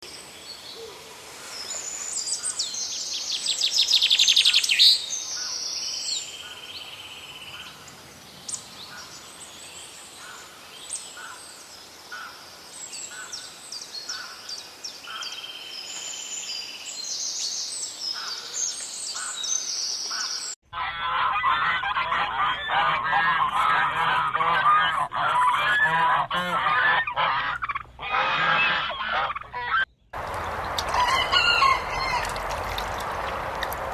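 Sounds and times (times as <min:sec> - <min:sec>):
flock of birds calling: 0:20.1 - 0:33.9.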